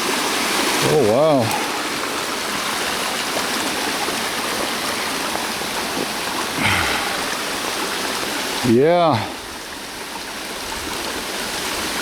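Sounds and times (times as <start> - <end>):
stream rushing over small falls: 0.0 - 12.0.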